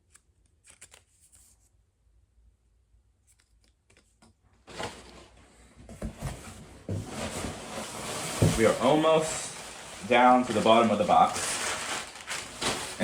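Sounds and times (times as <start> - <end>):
plastic packaging rustling: 6.2 - 13.0
plastic crinkling: 7.1 - 13.0.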